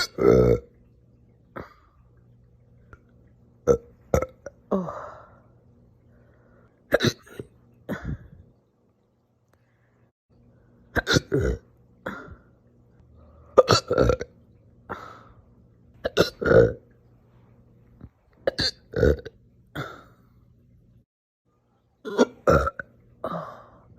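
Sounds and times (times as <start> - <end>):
person hiccuping: 6.9 - 8.2, 22.1 - 22.8.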